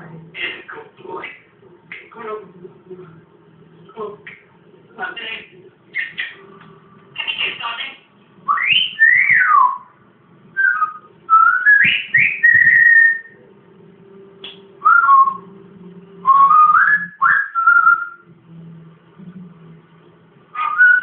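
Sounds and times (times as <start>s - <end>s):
parrot whistling: 8.5s - 9.9s, 10.6s - 13.4s, 16.3s - 18.2s, 20.6s - 21.0s.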